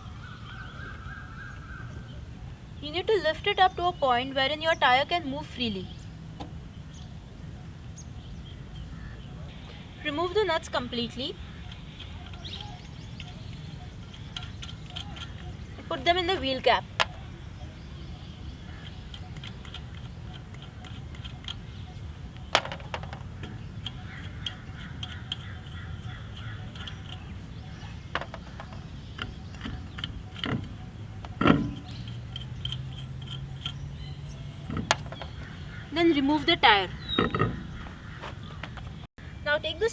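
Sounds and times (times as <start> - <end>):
metallic clicks of wheel nuts: 11.5 - 17.2, 18.7 - 35.8
sharp knocks: 34.7 - 35.6.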